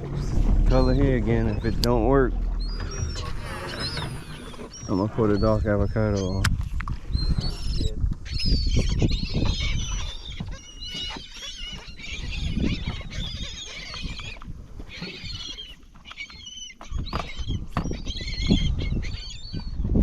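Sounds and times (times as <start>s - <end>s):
low rumble: 0.0s - 8.9s
seabirds calling: 0.0s - 20.0s.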